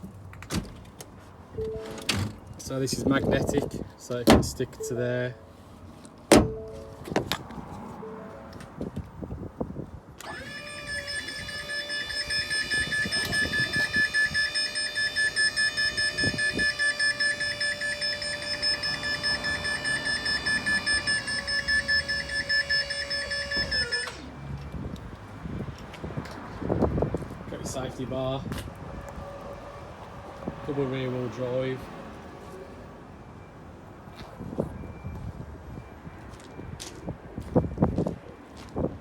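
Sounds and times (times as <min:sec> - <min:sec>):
hydraulic pump whining: 0:10.2 - 0:24.4.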